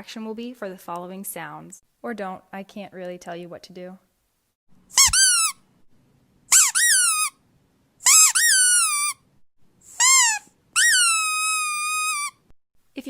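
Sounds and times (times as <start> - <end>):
squeaky dog toy squeaks: 4.9 - 5.6, 6.5 - 7.4, 8.0 - 9.2, 9.9 - 12.5.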